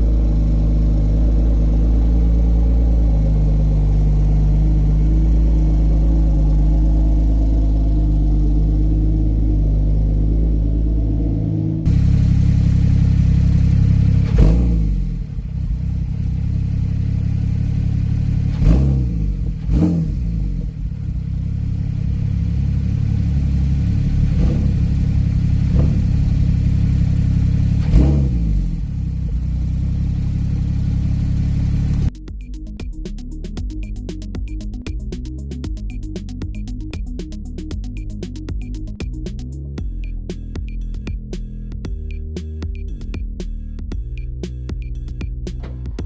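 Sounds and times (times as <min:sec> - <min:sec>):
car engine idling: 0:00.0 - 0:46.0
throttle blips: 0:32.1 - 0:43.4.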